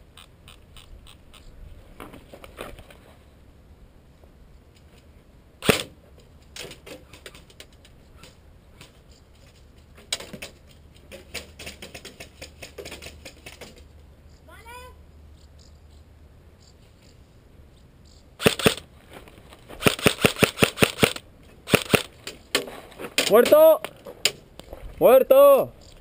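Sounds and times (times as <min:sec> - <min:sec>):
airsoft gun shots: 0:05.6 - 0:05.9, 0:18.4 - 0:18.8, 0:19.8 - 0:22.1
small clicks and rustles: 0:06.1 - 0:14.5.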